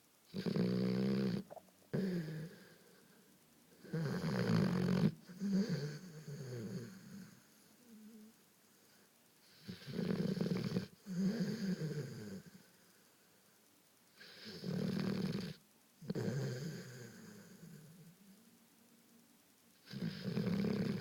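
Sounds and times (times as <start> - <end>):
dog snoring: 0.3 - 3.1, 3.8 - 8.3, 9.4 - 12.7, 14.2 - 18.1, 19.8 - 21.0.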